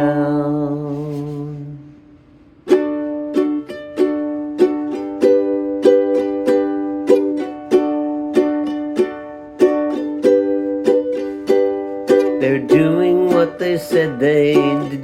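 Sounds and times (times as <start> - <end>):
man singing held note: 0.0 - 2.0
plucked string instrument strumming: 2.6 - 15.0.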